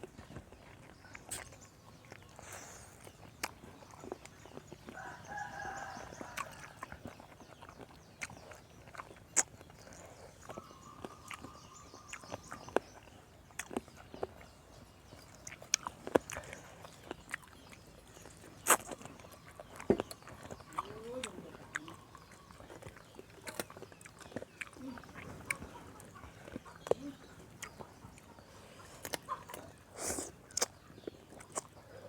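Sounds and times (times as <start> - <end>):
rooster crowing: 5.0 - 6.8.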